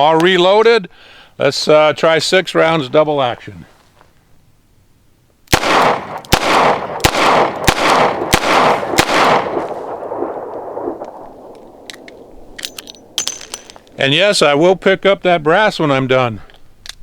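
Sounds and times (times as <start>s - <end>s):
revolver shots echoing: 5.6s - 13.8s.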